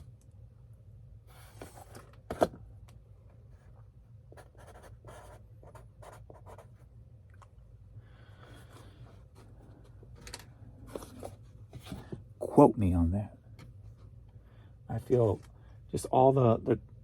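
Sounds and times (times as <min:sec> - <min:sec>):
faint low hum: 0:00.0 - 0:17.0
pen scratching on paper: 0:04.4 - 0:06.7.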